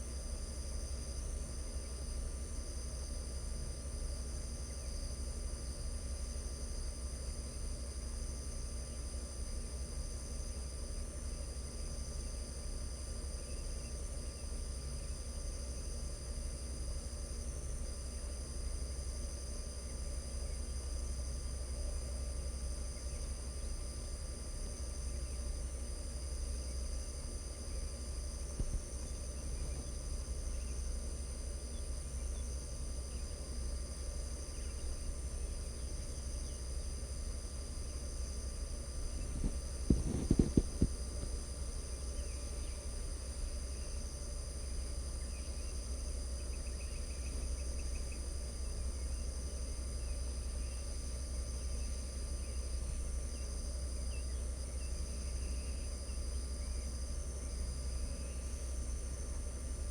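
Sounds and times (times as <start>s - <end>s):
crickets trilling: 0.0s - 59.9s.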